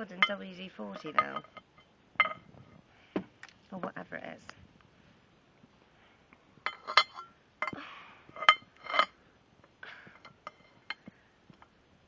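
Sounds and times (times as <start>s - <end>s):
hard parts clinking: 0.0s - 2.5s, 6.6s - 7.8s, 8.4s - 9.2s.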